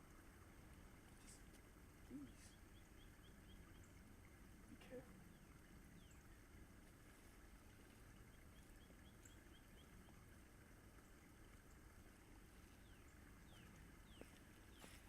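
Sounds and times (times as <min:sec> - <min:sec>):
faint outdoor hiss: 0:00.0 - 0:15.0.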